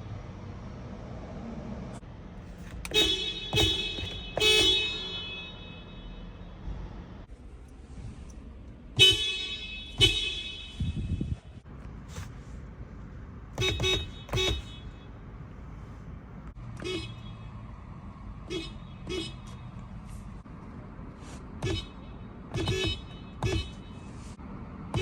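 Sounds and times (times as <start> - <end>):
short car horn beeps: 2.8 - 6.4, 9.0 - 11.4, 13.6 - 15.1, 21.6 - 24.2
car horn honks with echo: 2.8 - 6.5, 9.0 - 11.2, 13.6 - 15.2, 21.6 - 24.1.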